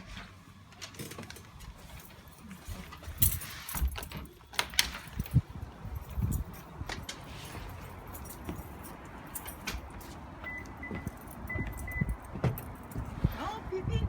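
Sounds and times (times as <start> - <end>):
small metal objects jangling: 2.0 - 4.3, 5.0 - 10.1.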